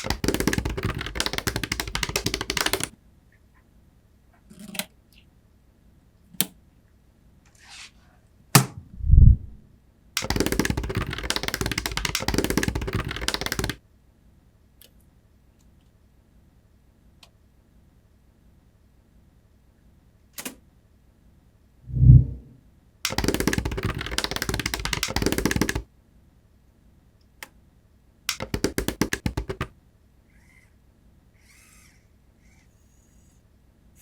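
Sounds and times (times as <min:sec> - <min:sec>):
rapid mechanical clicking: 0:00.0 - 0:02.9, 0:10.2 - 0:13.8, 0:23.1 - 0:25.8, 0:28.3 - 0:29.7.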